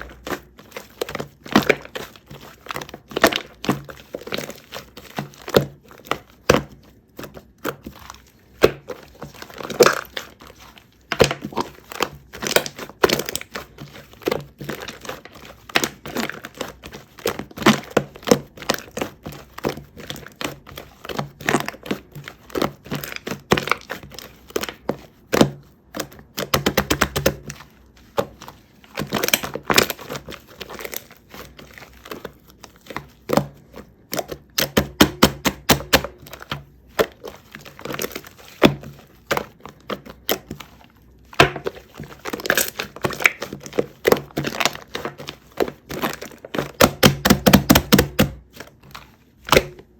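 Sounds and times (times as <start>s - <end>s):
slime squished by hand: 0.0s - 49.9s.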